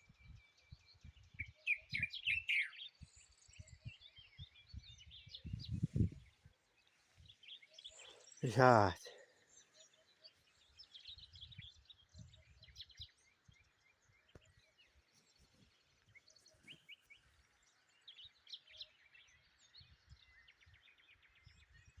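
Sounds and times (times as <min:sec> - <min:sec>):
wind rumble on microphone: 0:00.0 - 0:02.2, 0:03.0 - 0:06.6, 0:11.1 - 0:13.7
songbird chirps and trills: 0:00.0 - 0:22.0.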